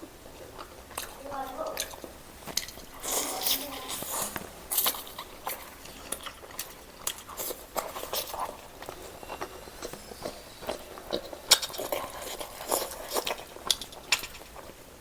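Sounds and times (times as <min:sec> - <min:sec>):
chewing with wet clicks: 0:00.0 - 0:15.0.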